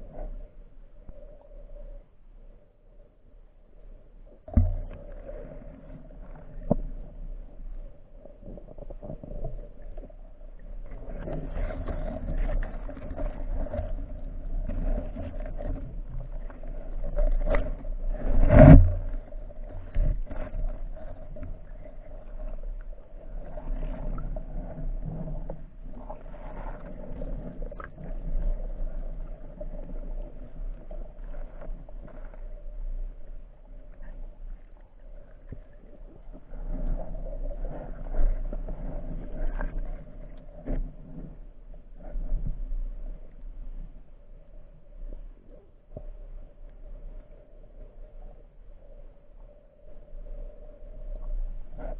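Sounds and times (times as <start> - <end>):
muffled underwater hum: 0.0 - 51.9
knocks and scrapes: 17.1 - 21.6.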